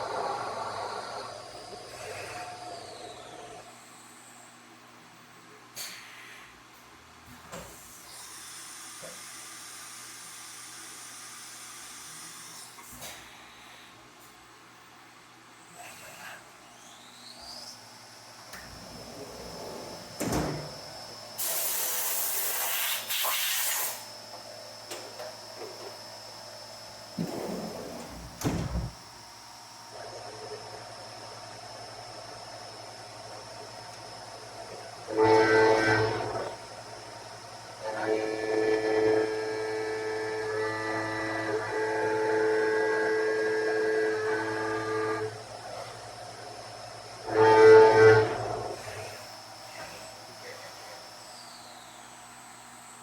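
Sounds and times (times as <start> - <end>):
milling machine cutting steel whine: 0.0 - 3.8, 29.6 - 50.0
compressed air hissing: 21.4 - 24.1.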